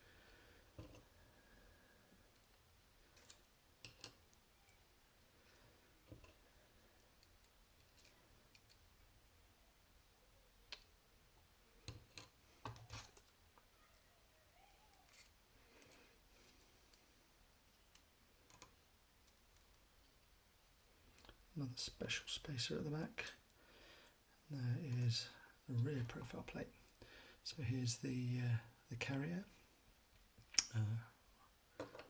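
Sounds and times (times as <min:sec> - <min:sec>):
small metal lock parts clicking: 0:03.2 - 0:04.8.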